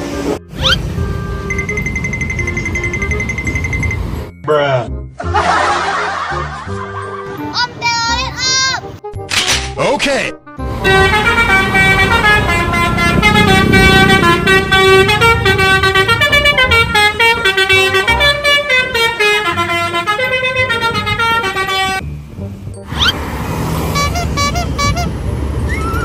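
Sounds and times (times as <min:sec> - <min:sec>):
musical air horn tune: 0:00.0 - 0:04.1, 0:10.6 - 0:22.0, 0:23.9 - 0:25.2
rising warbling tone: 0:00.6 - 0:00.9, 0:22.9 - 0:23.2.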